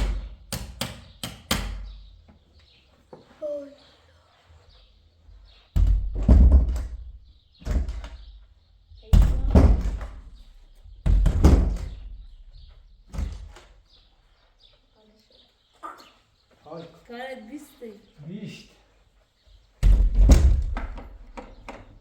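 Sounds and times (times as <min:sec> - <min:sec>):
wooden door being banged: 0:00.0 - 0:02.1, 0:05.7 - 0:13.8, 0:19.8 - 0:22.0.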